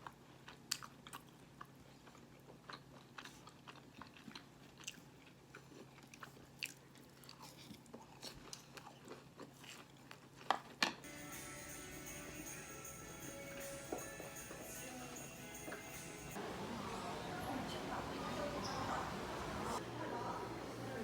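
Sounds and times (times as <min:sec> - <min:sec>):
chewing clicks and crunches: 0:00.0 - 0:11.0.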